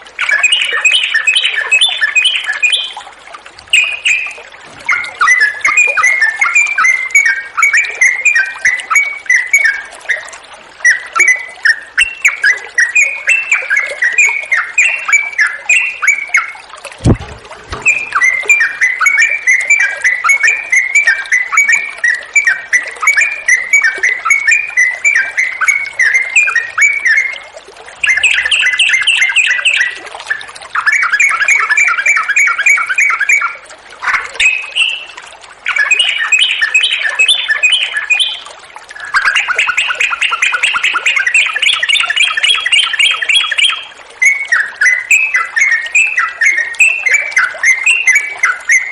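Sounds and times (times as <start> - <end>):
flowing water hiss: 0.0 - 48.9
bulbul singing rapid chattering phrases: 12.0 - 27.3
low thump: 17.0 - 18.0.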